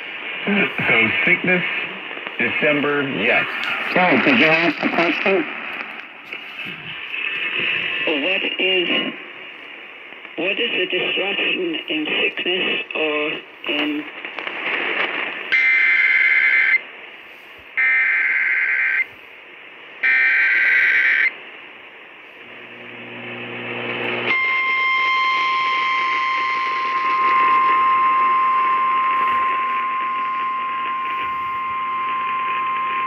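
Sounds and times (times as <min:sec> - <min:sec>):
radio hiss: 0:00.0 - 0:33.0
steady attention tone: 0:22.4 - 0:33.0.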